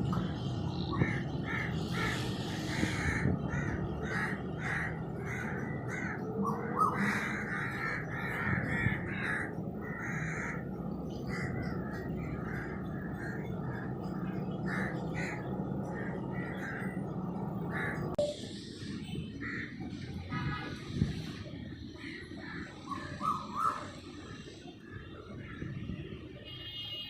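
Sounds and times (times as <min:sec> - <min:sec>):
crows cawing: 0:00.3 - 0:18.1, 0:19.4 - 0:19.7.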